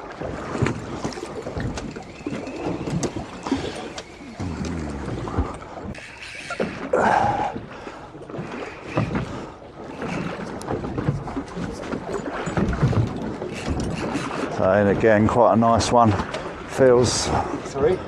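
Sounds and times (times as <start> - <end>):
sea slapping against boat hull: 0.0 - 6.0, 8.3 - 15.1.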